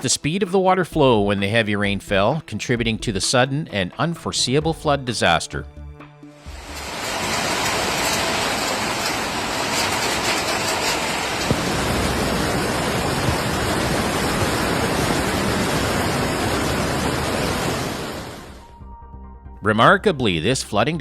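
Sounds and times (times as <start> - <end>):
floodwater rushing: 6.4 - 18.6.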